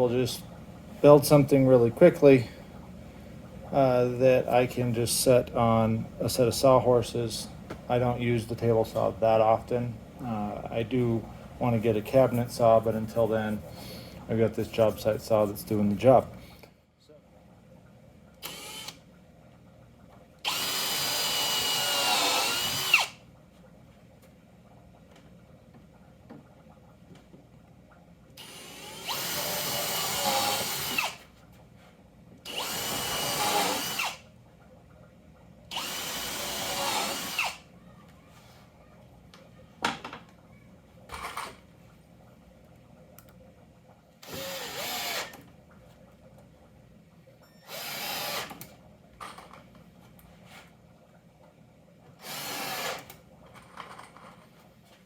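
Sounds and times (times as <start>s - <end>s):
power drill driving screws: 18.4s - 19.0s, 20.5s - 23.2s, 28.4s - 31.2s, 32.5s - 34.2s, 35.7s - 37.6s, 44.2s - 45.4s, 47.6s - 48.6s, 52.2s - 53.1s.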